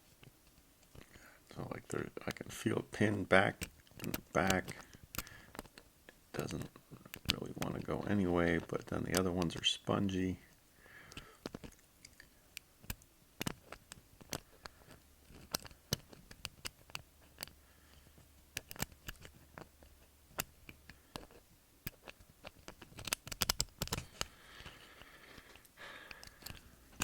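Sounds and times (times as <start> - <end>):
lock picking metallic clicks: 18.5 - 24.3, 25.6 - 27.0.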